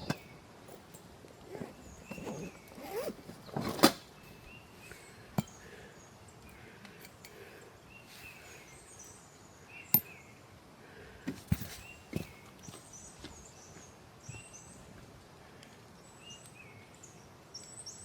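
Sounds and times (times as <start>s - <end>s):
rustling: 1.4s - 4.6s.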